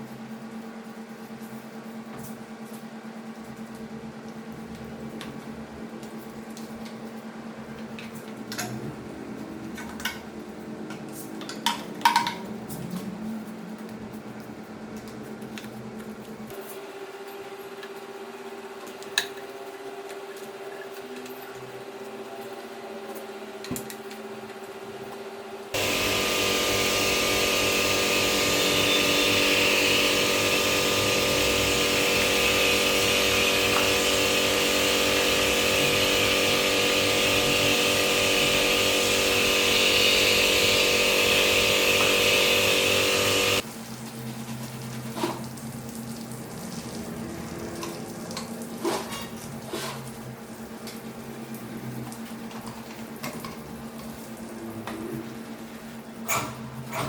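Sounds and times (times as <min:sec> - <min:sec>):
machine hissing and droning: 0:25.8 - 0:43.6.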